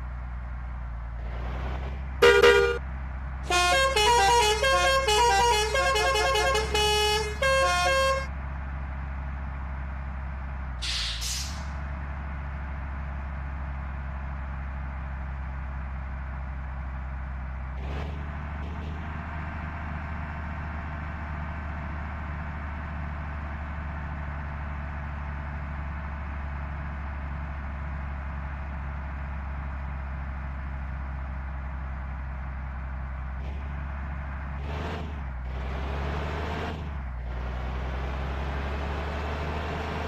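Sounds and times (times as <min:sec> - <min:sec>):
bus engine and road noise drone: 0:00.0 - 0:40.0.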